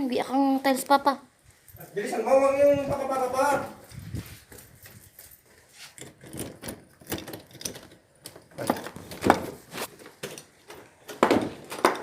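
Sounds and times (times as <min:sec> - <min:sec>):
knocking and rattling clatter: 0:06.0 - 0:12.0.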